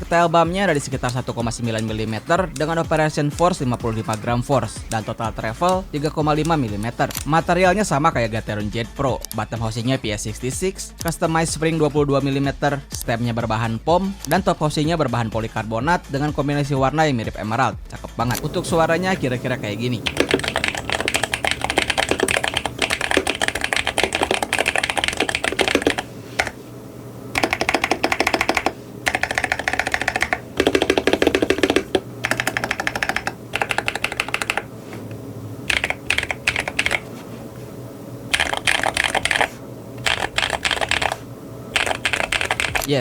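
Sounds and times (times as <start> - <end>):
mechanical keyboard typing: 0.0 - 7.4, 18.3 - 26.6, 27.3 - 34.7, 35.7 - 37.1, 38.3 - 42.9.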